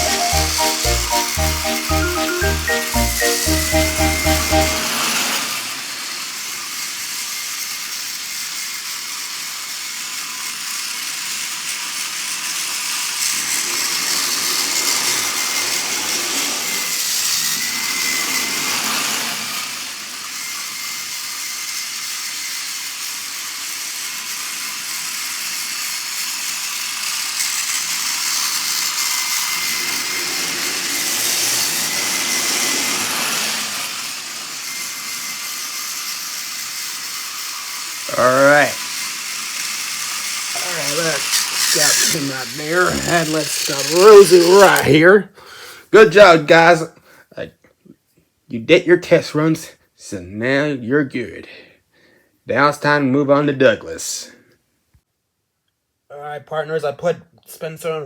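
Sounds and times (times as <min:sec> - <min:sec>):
toy train motor whine: 0:00.0 - 0:45.2
wheels rattling on plastic track: 0:00.0 - 0:45.2.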